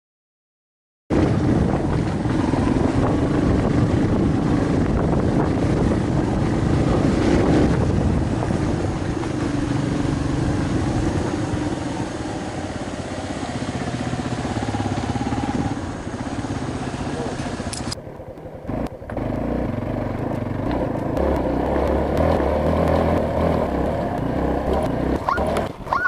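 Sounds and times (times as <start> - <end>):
motorcycle engine running: 1.1 - 26.0.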